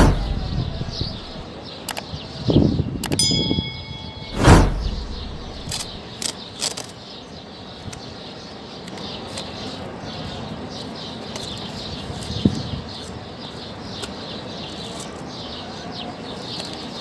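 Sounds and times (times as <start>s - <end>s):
low knock: 3.6s - 6.0s.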